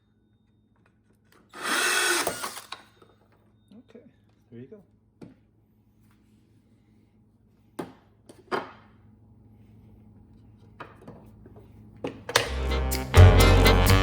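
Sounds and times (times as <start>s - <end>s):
music: 12.4s - 14.0s.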